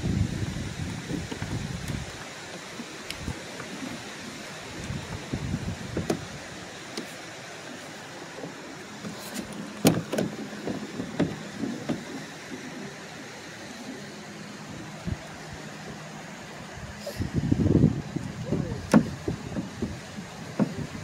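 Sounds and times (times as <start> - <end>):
irregular knocks and clunks: 8.4 - 12.2, 18.9 - 19.8, 20.5 - 20.8.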